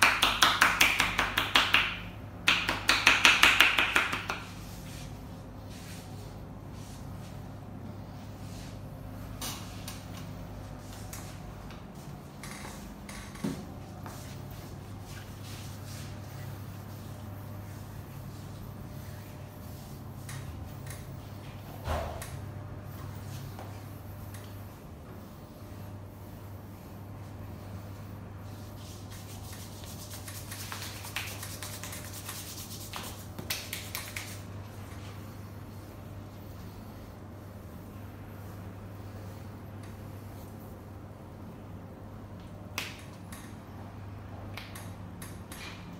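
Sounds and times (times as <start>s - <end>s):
hands rubbing and tapping: 0.0s - 5.0s, 28.8s - 34.4s
hands rubbing skin and clothing: 0.0s - 21.6s, 26.2s - 40.8s
steady low hum: 0.0s - 45.9s.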